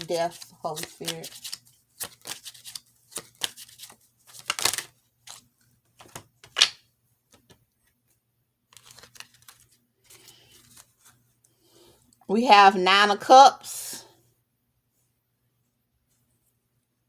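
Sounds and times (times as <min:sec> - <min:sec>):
cards being shuffled: 0:00.0 - 0:08.0, 0:08.7 - 0:11.2.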